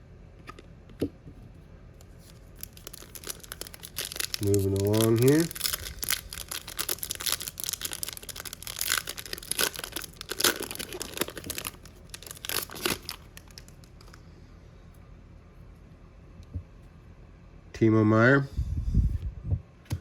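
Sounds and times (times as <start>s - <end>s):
foil wrapper tearing and crinkling: 2.1s - 14.2s.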